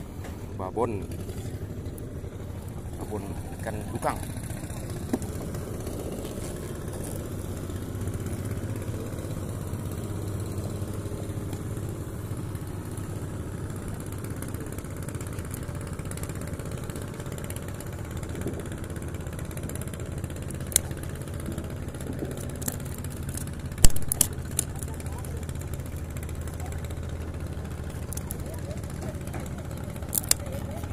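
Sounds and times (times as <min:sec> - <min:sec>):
engine idling: 0:00.0 - 0:30.9
sharp click: 0:23.8 - 0:24.4.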